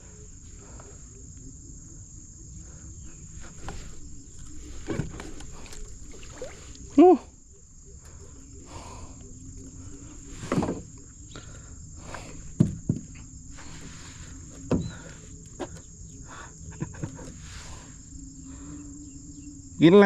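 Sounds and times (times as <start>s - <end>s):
crickets and insects chorus: 0.0s - 20.0s
short knocks and thumps: 12.6s - 13.3s.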